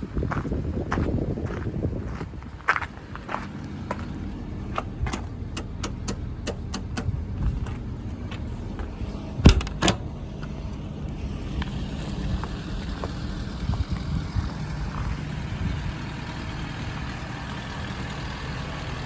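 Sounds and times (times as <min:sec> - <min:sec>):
diesel engine idling: 0:00.0 - 0:19.0
footsteps: 0:00.3 - 0:05.3, 0:07.4 - 0:09.8, 0:10.4 - 0:15.2.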